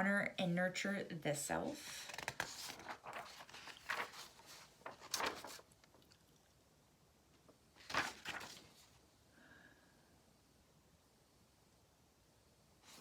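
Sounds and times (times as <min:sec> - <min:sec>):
paper pages rustling: 0:02.0 - 0:06.1, 0:07.5 - 0:09.0.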